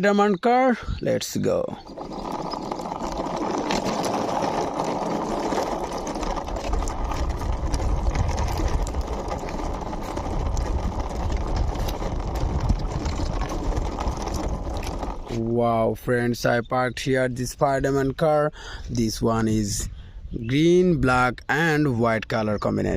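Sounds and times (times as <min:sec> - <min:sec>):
toy car wheels rolling: 0:01.6 - 0:15.5.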